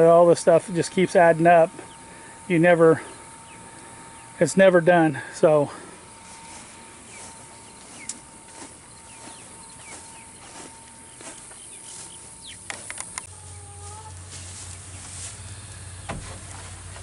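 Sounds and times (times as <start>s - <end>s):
insects: 0.0s - 17.0s
low hum: 0.0s - 17.0s
small birds chirping: 0.7s - 16.2s
sharp clicks: 12.6s - 13.3s.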